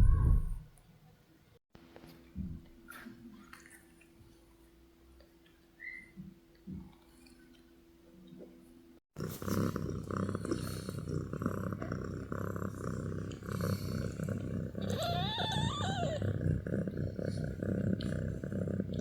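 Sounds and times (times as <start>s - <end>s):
cat purring: 9.2s - 19.0s
kitten mewing: 14.8s - 16.3s.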